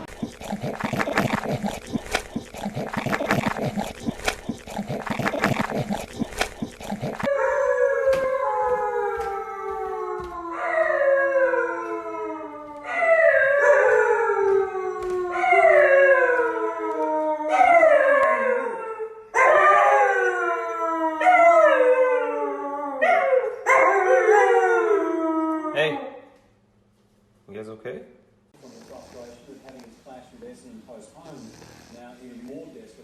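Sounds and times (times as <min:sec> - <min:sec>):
dog howling: 0:05.6 - 0:26.1.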